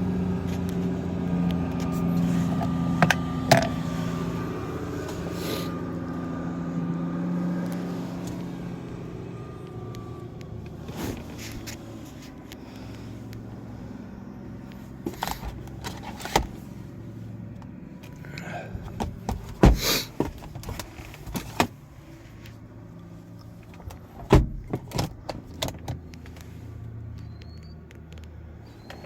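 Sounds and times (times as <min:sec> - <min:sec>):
clicks and knocks in car interior: 0:14.9 - 0:16.6, 0:18.7 - 0:21.8, 0:23.5 - 0:26.5.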